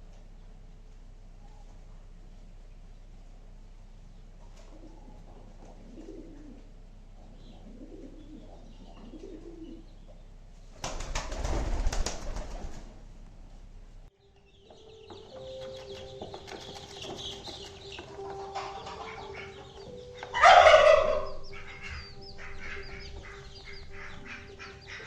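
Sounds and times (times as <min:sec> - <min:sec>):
farm birds calling softly: 0:00.0 - 0:11.1, 0:14.1 - 0:25.0
high chirps: 0:14.2 - 0:25.0.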